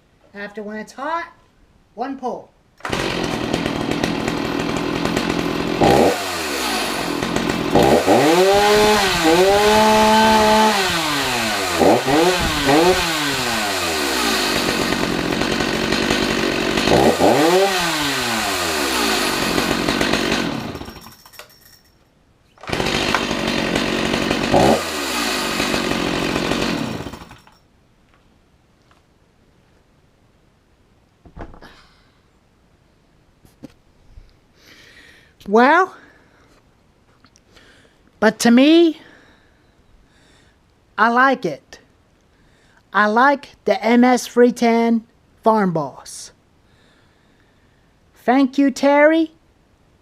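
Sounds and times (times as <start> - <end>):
chainsaw idling and revving: 2.8 - 21.2, 22.6 - 27.6.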